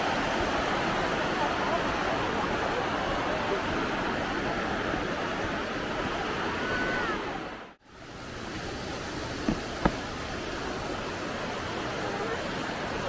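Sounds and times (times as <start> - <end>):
rushing water: 0.0 - 13.0
short knocks: 9.3 - 10.3.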